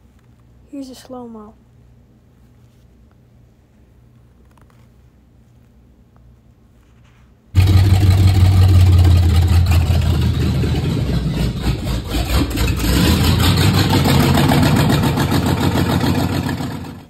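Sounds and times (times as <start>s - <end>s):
car engine running: 7.6s - 17.0s.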